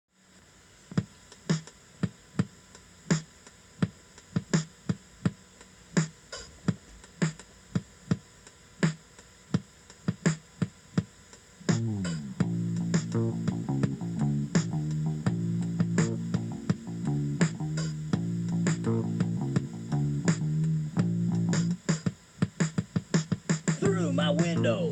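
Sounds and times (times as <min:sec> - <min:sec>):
drum machine beat: 0:01.0 - 0:05.4, 0:06.0 - 0:24.9
bass guitar sliding down: 0:11.7 - 0:21.8.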